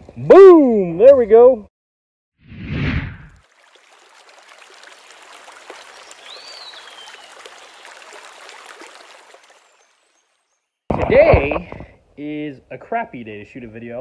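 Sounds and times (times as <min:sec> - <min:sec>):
trickling water: 0:03.4 - 0:11.9.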